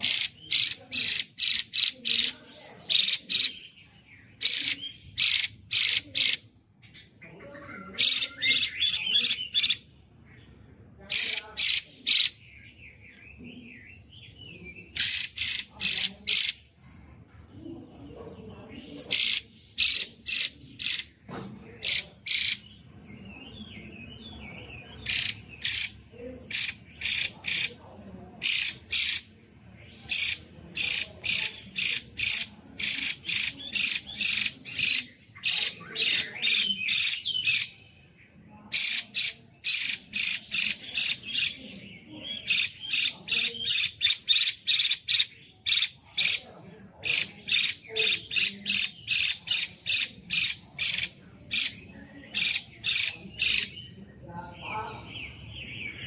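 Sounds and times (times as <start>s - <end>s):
soft bird twittering: 0.0s - 16.7s, 17.6s - 56.0s.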